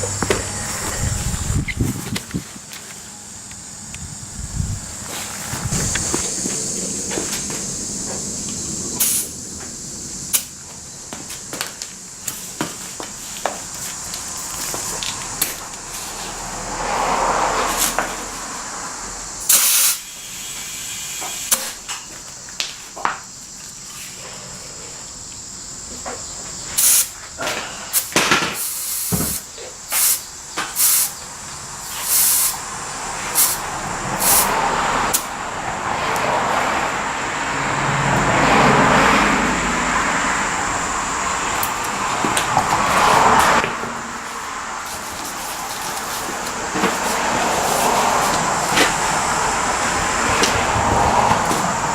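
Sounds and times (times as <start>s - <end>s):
vehicle passing: 0.0s - 10.3s, 14.5s - 19.4s, 32.6s - 51.9s
loud hissing burst: 0.0s - 10.6s, 13.2s - 22.1s, 26.7s - 35.7s
steady high hiss: 0.0s - 51.9s.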